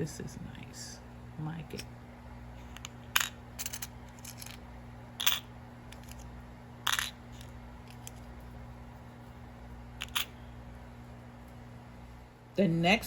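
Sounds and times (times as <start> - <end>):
metal charms clinking: 2.8 - 4.6, 6.9 - 8.3.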